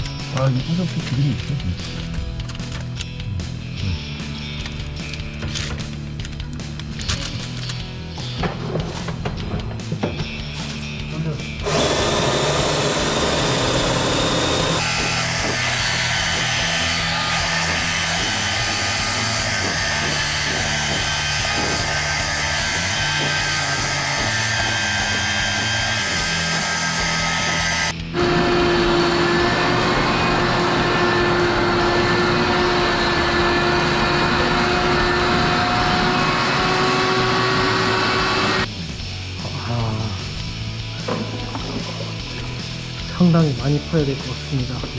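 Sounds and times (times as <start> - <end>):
wet-dry vacuum motor whining: 11.6 - 38.7.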